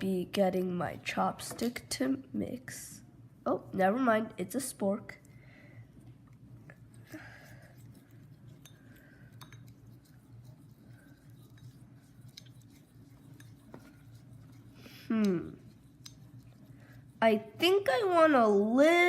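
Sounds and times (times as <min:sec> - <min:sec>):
plastic spork stirring glue: 0:06.7 - 0:17.8.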